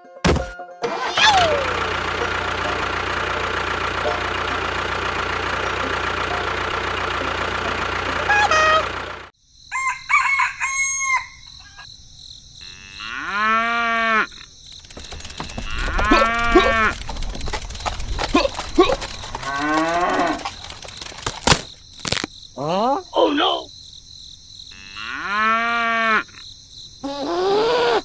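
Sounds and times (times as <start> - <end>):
steady mechanical hum: 14.7 - 22.3.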